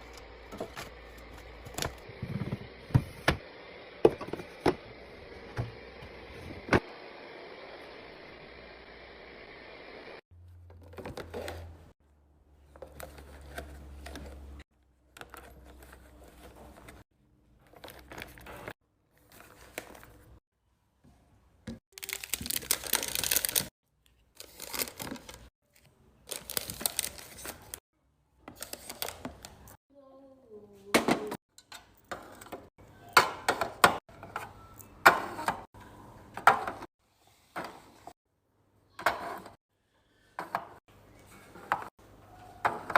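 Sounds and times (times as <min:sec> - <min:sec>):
plastic packaging crinkling: 0:21.9 - 0:23.7, 0:26.2 - 0:27.8.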